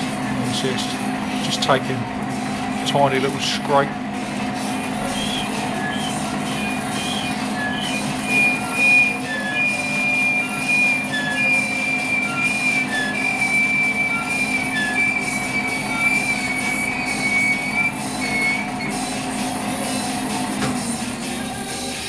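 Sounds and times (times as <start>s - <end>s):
lathe machine hum: 0.0s - 22.0s
threading tool squealing: 5.0s - 19.4s.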